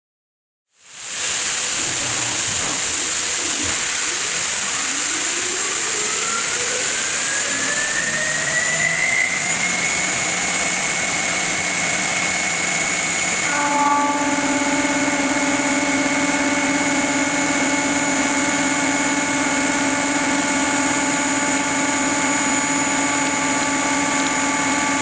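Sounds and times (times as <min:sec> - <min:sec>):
milling machine hissing: 0:00.8 - 0:25.0
spindle whine rising: 0:02.8 - 0:25.0.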